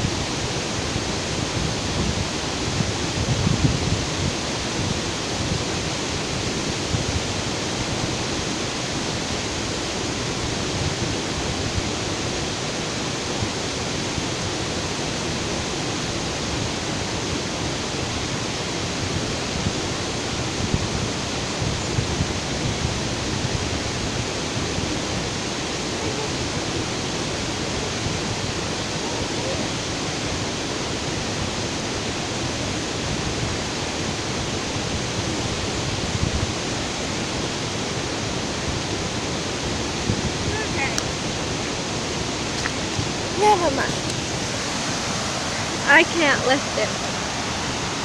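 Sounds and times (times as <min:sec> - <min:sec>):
waterfall rushing: 0:00.0 - 0:48.0.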